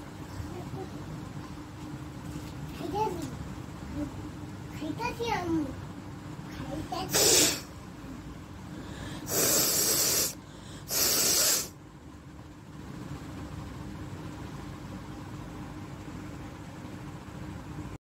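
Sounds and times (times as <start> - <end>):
person blowing nose: 7.1 - 7.7, 9.3 - 11.7.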